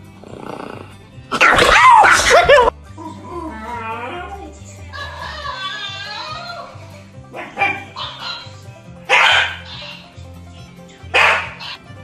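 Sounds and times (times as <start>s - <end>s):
background music: 0.0s - 12.0s
dog barking: 7.3s - 10.1s, 11.1s - 11.9s.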